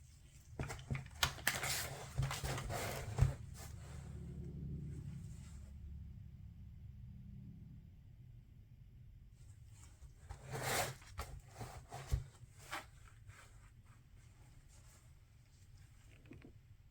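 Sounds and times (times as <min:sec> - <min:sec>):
rustling and scraping: 0:00.0 - 0:04.4, 0:09.6 - 0:16.8
low steady hum: 0:00.0 - 0:16.9.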